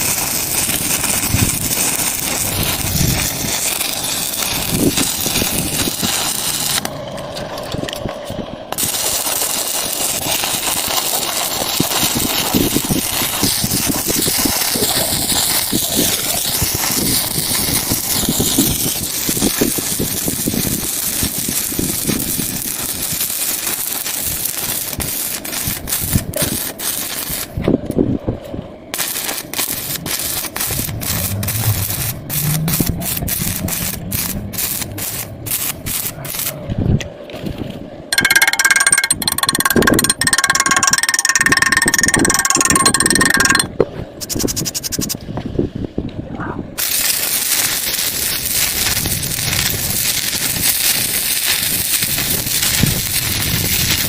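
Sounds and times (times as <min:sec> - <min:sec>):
welding arc crackling: 0:00.0 - 0:08.0, 0:08.7 - 0:27.6, 0:28.9 - 0:36.6, 0:38.1 - 0:43.7, 0:46.8 - 0:54.0
sharp clicks: 0:38.2 - 0:43.7.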